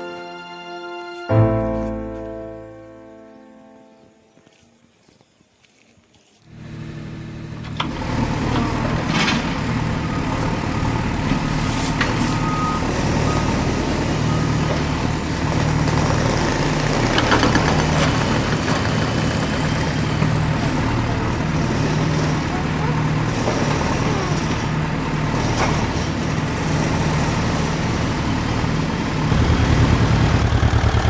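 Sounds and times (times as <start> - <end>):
heavy vehicle engine running: 6.5 - 31.0.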